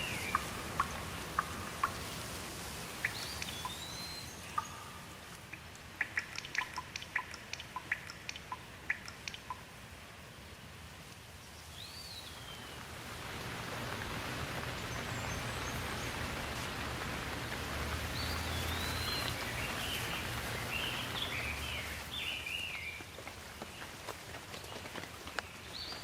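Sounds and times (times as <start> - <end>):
bird chirping: 0.0 - 2.3, 2.9 - 9.6, 11.5 - 12.8, 14.6 - 16.7, 18.0 - 23.9
rain falling: 0.0 - 26.0.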